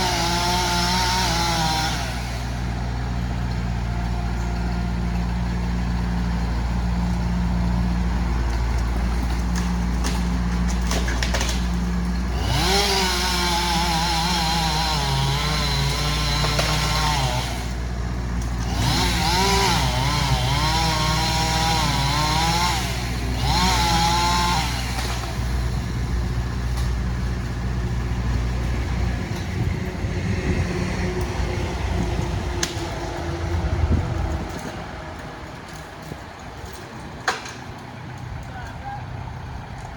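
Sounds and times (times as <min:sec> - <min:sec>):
chainsaw revving and cutting: 0:00.0 - 0:03.8, 0:10.0 - 0:29.2.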